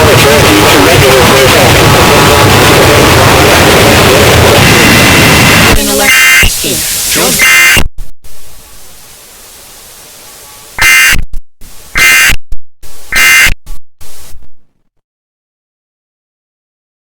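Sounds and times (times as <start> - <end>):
static hiss: 0.0 - 14.6
harsh buzzing data bursts: 0.9 - 9.1, 10.7 - 11.2, 11.8 - 14.4.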